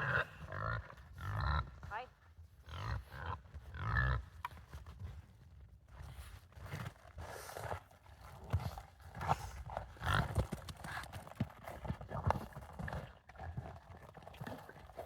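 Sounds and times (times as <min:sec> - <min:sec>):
pigs grunting: 0:00.0 - 0:01.8, 0:02.7 - 0:04.3
pigs chomping and smacking: 0:07.0 - 0:15.0.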